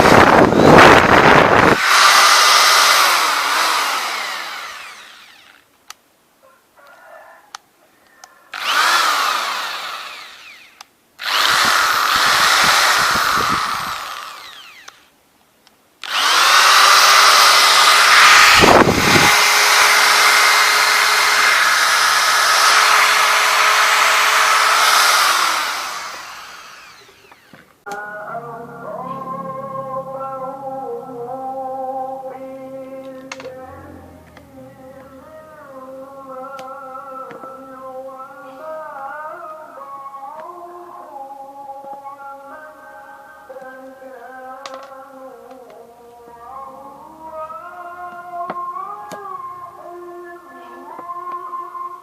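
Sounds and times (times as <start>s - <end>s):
electric drill spinning with rising whine: 0.0s - 5.7s, 8.5s - 15.1s, 16.0s - 27.8s.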